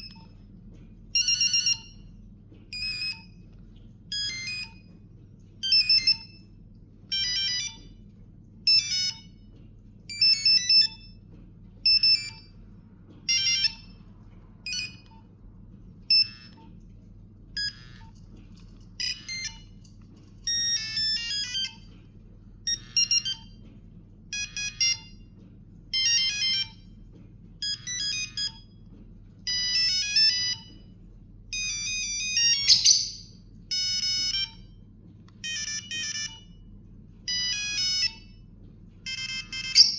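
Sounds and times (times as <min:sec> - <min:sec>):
mobile phone beeping ringtones: 0:01.2 - 0:02.0, 0:05.7 - 0:06.3, 0:07.1 - 0:07.8, 0:08.7 - 0:09.3, 0:10.2 - 0:11.1, 0:11.9 - 0:12.5, 0:13.3 - 0:13.9, 0:14.7 - 0:15.1, 0:16.1 - 0:16.6, 0:17.6 - 0:18.1, 0:19.0 - 0:19.8, 0:20.4 - 0:22.0, 0:22.7 - 0:23.6, 0:24.4 - 0:25.1, 0:26.0 - 0:26.8, 0:27.6 - 0:28.6, 0:29.5 - 0:30.8, 0:31.5 - 0:34.6, 0:35.4 - 0:36.6, 0:37.3 - 0:38.3, 0:39.0 - 0:39.9.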